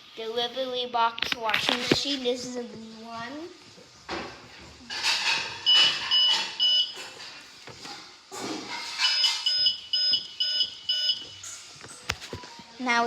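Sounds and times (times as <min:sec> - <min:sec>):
clattering handling noise: 0:04.1 - 0:09.7, 0:11.4 - 0:12.5.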